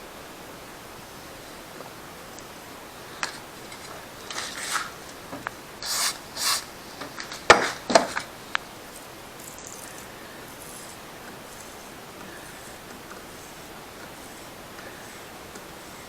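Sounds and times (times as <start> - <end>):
metal scraping on metal: 9.4 - 16.0.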